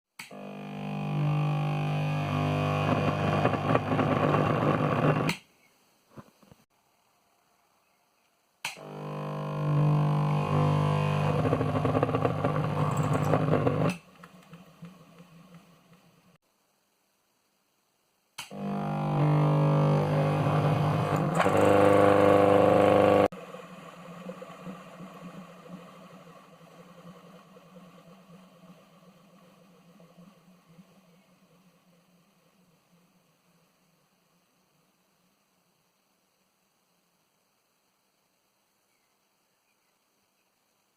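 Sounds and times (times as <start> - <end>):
deep electrical motor hum: 0.3 - 5.3, 8.7 - 15.9, 18.5 - 31.5.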